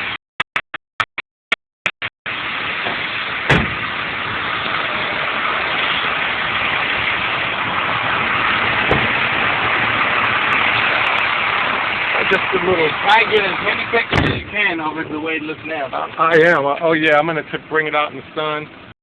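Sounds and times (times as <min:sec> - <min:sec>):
vehicle engine idling: 0:02.3 - 0:18.9
thumps: 0:02.8 - 0:03.9, 0:08.8 - 0:09.3, 0:14.1 - 0:14.6.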